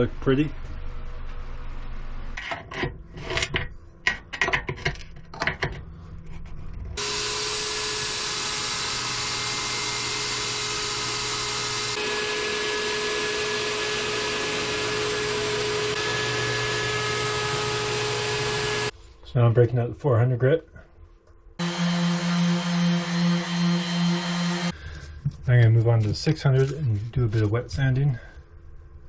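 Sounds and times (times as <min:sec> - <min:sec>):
orbital sander running: 0:07.0 - 0:18.9, 0:21.6 - 0:24.8.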